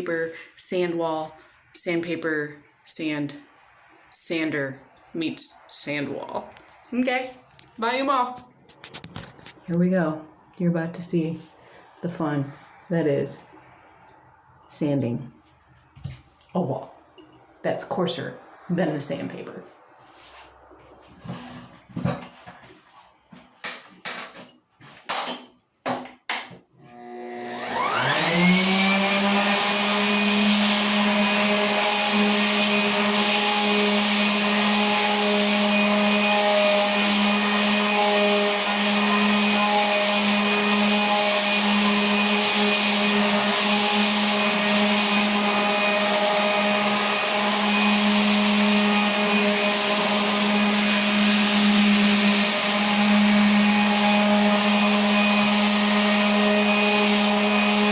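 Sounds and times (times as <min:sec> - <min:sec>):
electric sander on plaster: 0:26.9 - 0:57.9.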